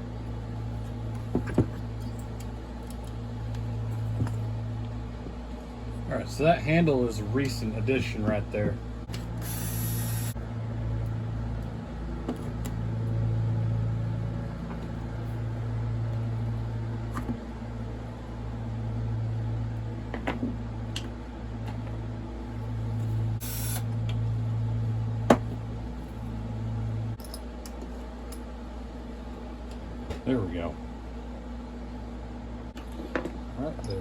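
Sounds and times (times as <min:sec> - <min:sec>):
low motor hum: 0:00.0 - 0:27.2.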